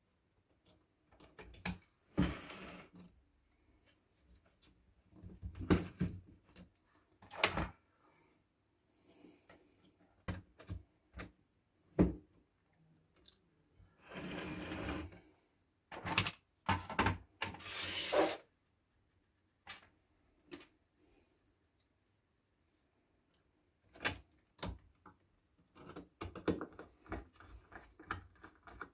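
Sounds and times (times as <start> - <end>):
rubbing scraping noise: 17.6 - 18.4.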